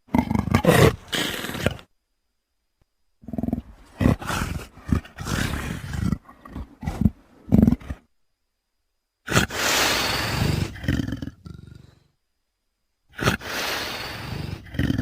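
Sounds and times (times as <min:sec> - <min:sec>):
leopard growling: 0:00.0 - 0:01.9, 0:03.2 - 0:08.1, 0:09.3 - 0:12.1, 0:13.2 - 0:15.0.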